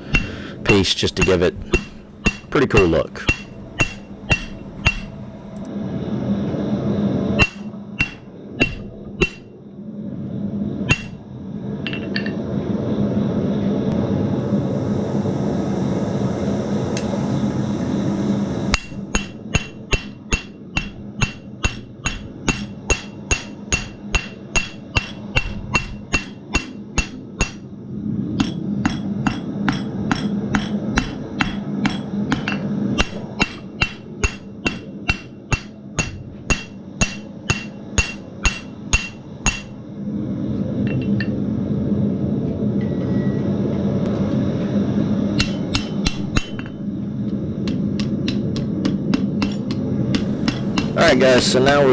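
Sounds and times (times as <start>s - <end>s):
hammer striking steel on anvil: 1.2s - 5.7s, 50.3s - 51.0s.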